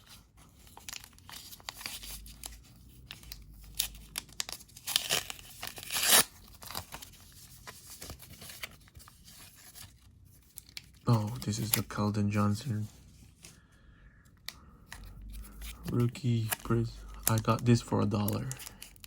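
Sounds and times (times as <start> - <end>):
packaging rustling and crinkling: 0.0 - 12.0, 14.9 - 19.0
packaging ripping: 0.6 - 11.8.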